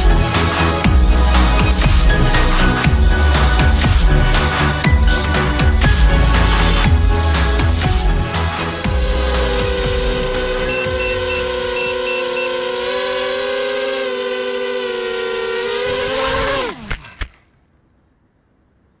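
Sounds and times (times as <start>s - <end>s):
quadcopter motors whining: 8.6s - 17.4s.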